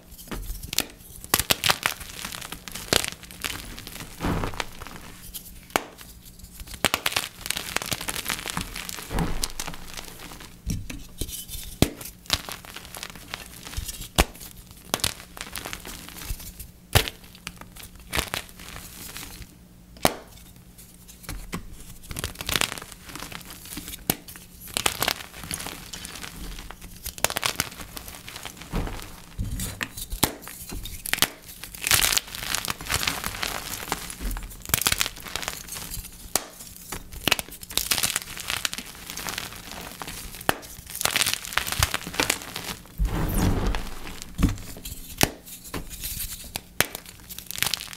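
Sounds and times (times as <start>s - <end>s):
chalk blocks crunching and cracking: 21.1s - 43.0s.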